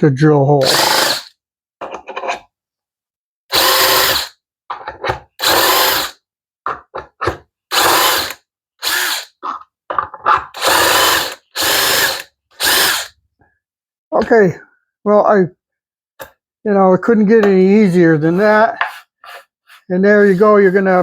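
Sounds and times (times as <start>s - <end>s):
drill boring holes: 0.6s - 1.3s, 3.5s - 4.4s, 5.4s - 6.2s, 7.7s - 9.4s, 10.6s - 13.2s.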